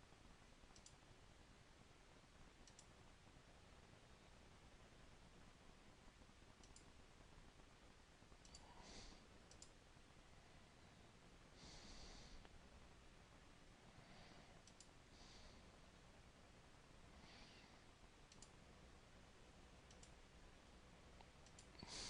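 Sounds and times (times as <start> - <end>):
computer mouse clicks: 0.7 - 1.0, 2.6 - 2.9, 6.6 - 6.9, 8.4 - 8.7, 9.5 - 9.8, 14.6 - 14.9, 18.3 - 18.6, 19.9 - 20.2, 21.2 - 22.0
soft breaths into microphone: 8.6 - 9.4, 10.2 - 12.7, 13.7 - 15.9, 17.0 - 18.0, 21.8 - 22.0.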